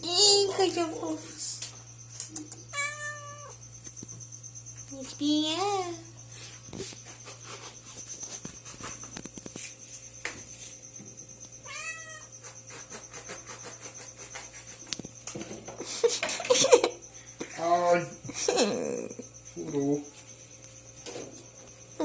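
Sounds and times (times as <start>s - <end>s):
cat meowing: 2.7s - 3.6s, 11.7s - 12.3s.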